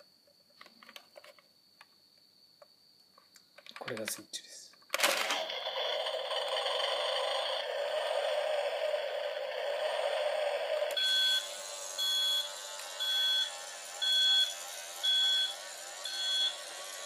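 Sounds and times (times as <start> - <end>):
toy speaker hum: 5.0 - 17.0
warning beep: 11.0 - 16.6.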